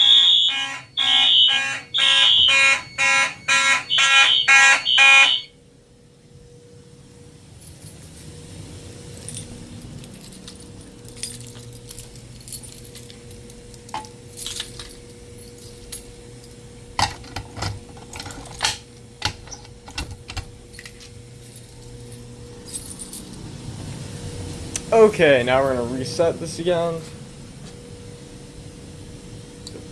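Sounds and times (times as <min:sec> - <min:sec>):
keys jangling: 0:07.6 - 0:23.5.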